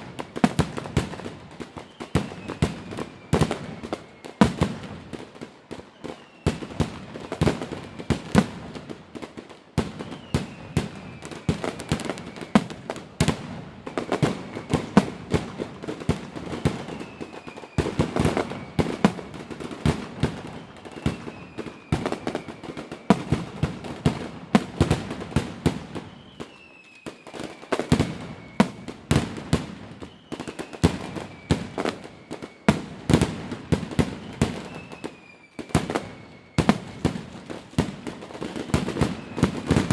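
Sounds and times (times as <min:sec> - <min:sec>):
falling firework whistles: 0:00.0 - 0:39.9
fireworks bangs and crackling: 0:00.0 - 0:39.9.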